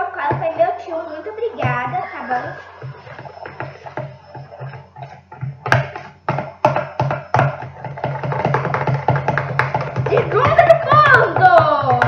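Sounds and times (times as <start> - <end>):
music with percussive beat: 1.5 - 12.0
sharp taps: 2.7 - 12.0.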